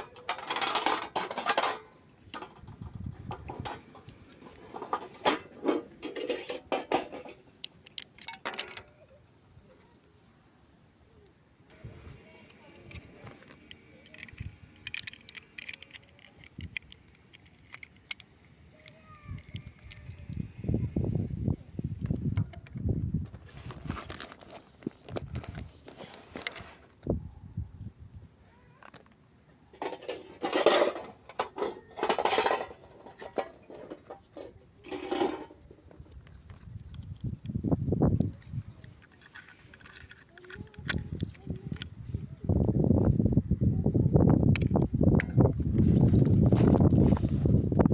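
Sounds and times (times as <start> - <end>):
plastic toy packaging clicking: 7.6 - 9.0, 12.8 - 20.4, 28.7 - 29.2, 29.8 - 37.6, 38.3 - 42.0
packaging rustling: 23.4 - 26.9.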